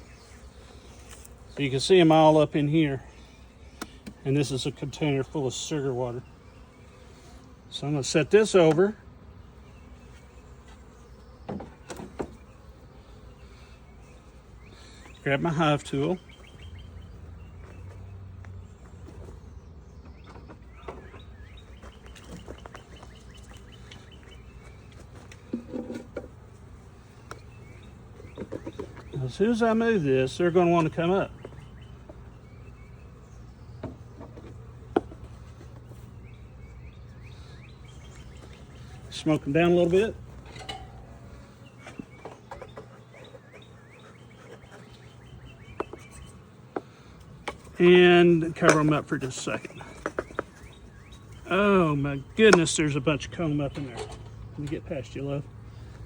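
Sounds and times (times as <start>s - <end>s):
birds chirping: 0.0s - 56.0s
honeybees humming: 0.0s - 56.0s.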